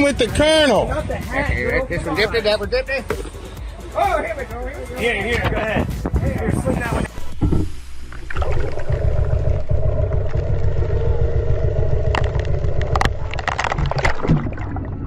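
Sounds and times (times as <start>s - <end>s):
engine running with low rumble: 6.2s - 14.0s.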